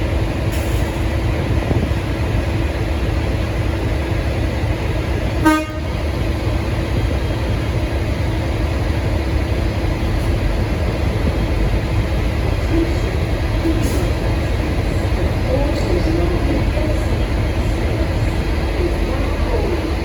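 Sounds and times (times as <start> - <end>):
diesel locomotive rumble: 0.0 - 20.0
locomotive horn toot: 5.4 - 6.0.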